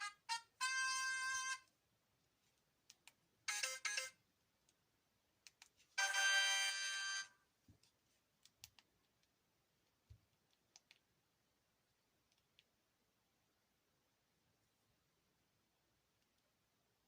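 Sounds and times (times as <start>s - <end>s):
faint clicks: 10.5s - 11.1s.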